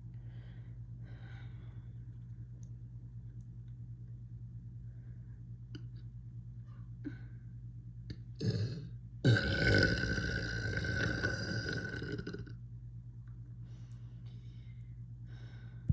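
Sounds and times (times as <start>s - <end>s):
person burping: 8.4s - 12.6s.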